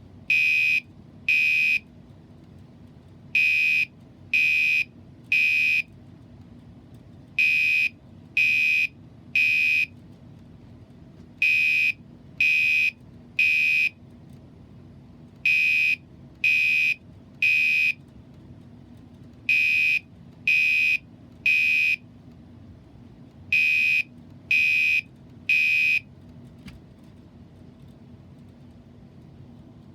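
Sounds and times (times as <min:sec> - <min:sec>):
fire alarm beeping: 0:00.3 - 0:01.8, 0:03.4 - 0:05.9, 0:07.4 - 0:09.9, 0:11.4 - 0:14.0, 0:15.4 - 0:18.0, 0:19.5 - 0:22.0, 0:23.5 - 0:26.1.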